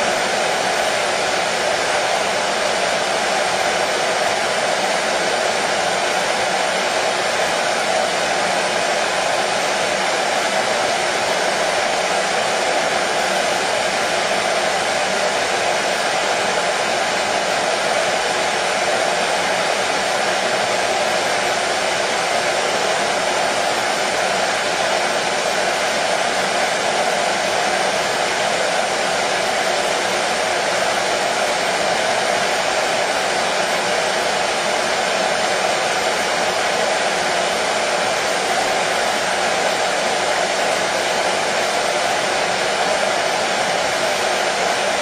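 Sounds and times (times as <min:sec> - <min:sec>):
hair dryer blowing: 0:00.0 - 0:45.0.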